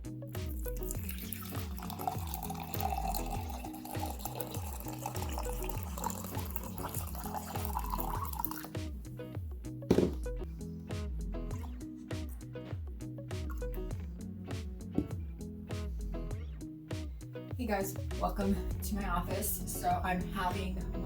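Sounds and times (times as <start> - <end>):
music with bass beat: 0.0 - 21.0
tap water running: 0.4 - 8.8.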